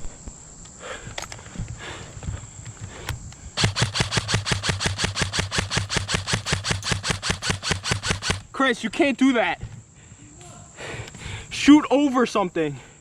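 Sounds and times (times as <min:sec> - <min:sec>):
airsoft rifle full-auto burst: 0:03.6 - 0:08.5
gun motor and gearbox hum: 0:03.6 - 0:08.5.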